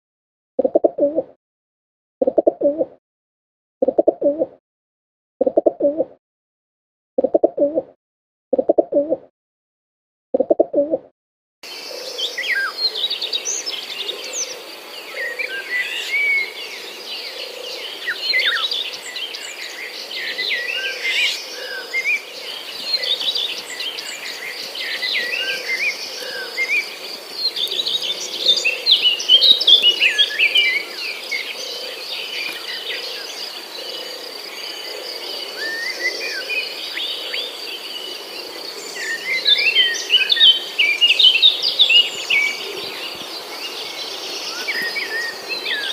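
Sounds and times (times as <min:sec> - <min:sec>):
small birds chirping and twittering: 0:11.6 - 0:45.9.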